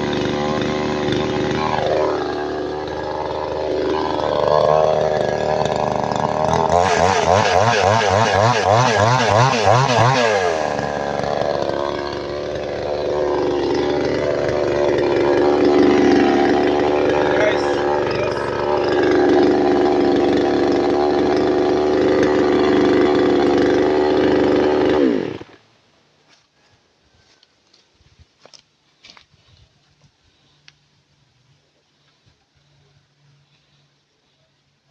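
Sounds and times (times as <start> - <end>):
chainsaw engine revving: 0.0 - 25.6.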